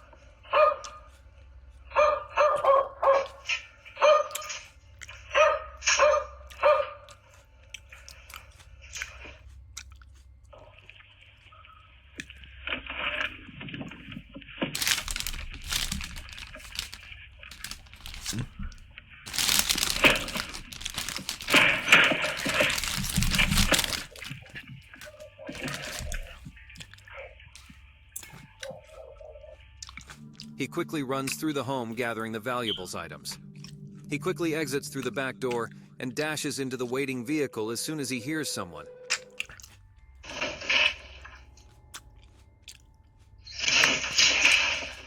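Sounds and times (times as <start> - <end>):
dog barking: 0.5 - 1.2, 1.9 - 4.6, 5.3 - 7.2.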